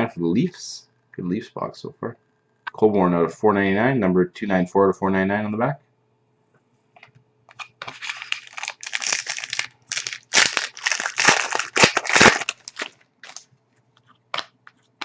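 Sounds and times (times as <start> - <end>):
packaging crinkling and rustling: 7.5 - 13.5.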